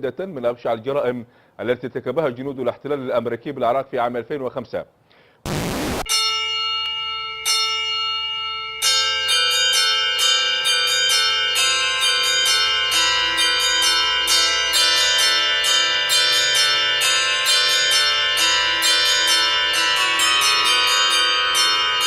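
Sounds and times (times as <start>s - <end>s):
bells ringing a simple tune: 6.1s - 22.0s.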